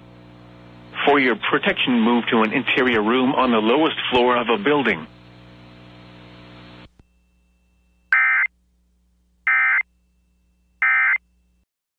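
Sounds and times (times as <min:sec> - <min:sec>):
digital data tone bursts: 0:08.1 - 0:08.5.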